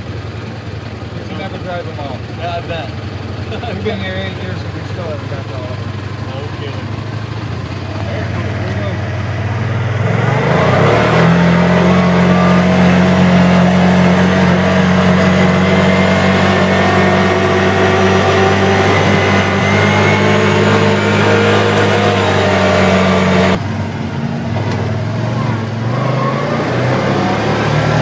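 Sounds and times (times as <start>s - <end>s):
atv engine running: 0.0s - 28.0s.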